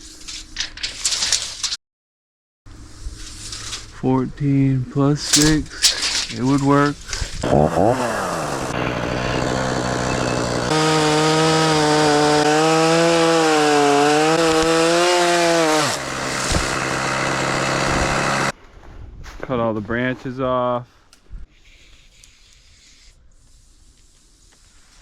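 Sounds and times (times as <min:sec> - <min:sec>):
chainsaw idling and cutting: 0:06.3 - 0:18.5.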